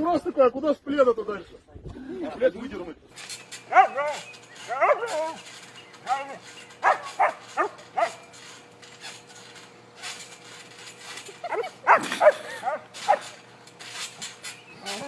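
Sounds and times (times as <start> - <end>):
faint clicks and rustles: 3.1 - 15.0
dog yipping and barking: 3.7 - 5.2, 6.8 - 8.2, 11.4 - 13.2.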